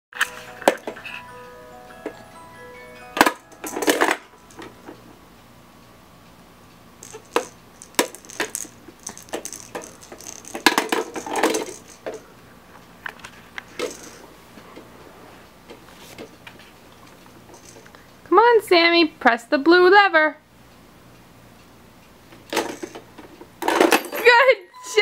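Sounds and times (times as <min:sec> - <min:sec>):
toy gumball machine clattering: 0:00.2 - 0:01.4, 0:03.2 - 0:05.0, 0:07.0 - 0:12.2, 0:13.7 - 0:14.2, 0:17.0 - 0:18.0, 0:22.5 - 0:25.0.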